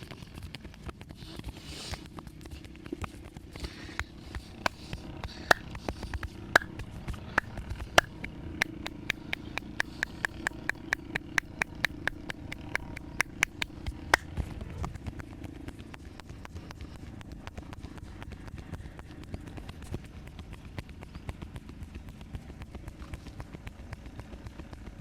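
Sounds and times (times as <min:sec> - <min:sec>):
hands slapping during massage: 0:05.5 - 0:06.8, 0:08.6 - 0:14.2.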